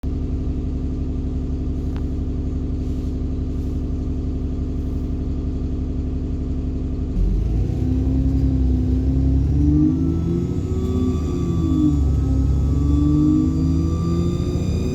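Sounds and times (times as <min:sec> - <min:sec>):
bus engine idling: 0:00.1 - 0:14.9
bus accelerating with whine: 0:07.1 - 0:14.9.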